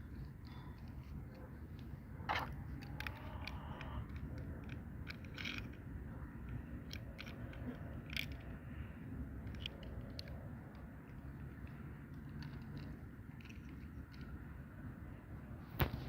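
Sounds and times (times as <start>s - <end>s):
plastic pieces clicking: 2.8s - 8.5s.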